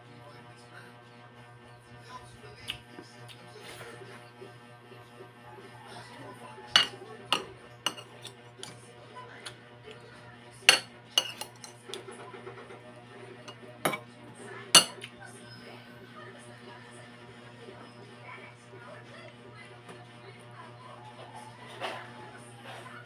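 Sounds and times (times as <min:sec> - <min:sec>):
cutlery clinking against a plate: 0:06.7 - 0:08.8, 0:10.7 - 0:12.0, 0:13.5 - 0:14.1, 0:14.8 - 0:15.1.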